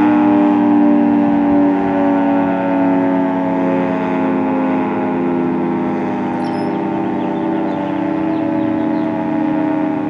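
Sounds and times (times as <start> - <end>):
two-tone warning siren: 0.0 - 10.0.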